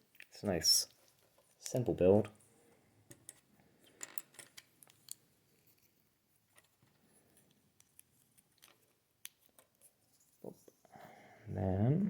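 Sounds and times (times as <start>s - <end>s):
plastic bricks clicking together: 3.1s - 5.2s.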